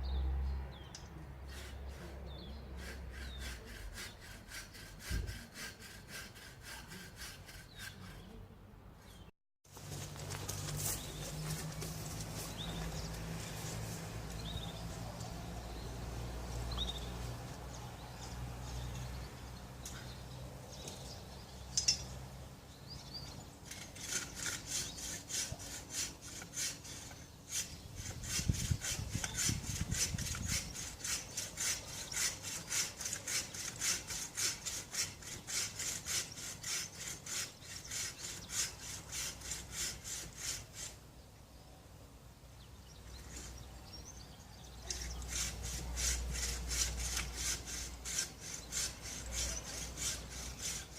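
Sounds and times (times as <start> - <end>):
handsaw cutting tree trunk: 1.5 - 8.4, 23.6 - 41.0, 44.8 - 50.9.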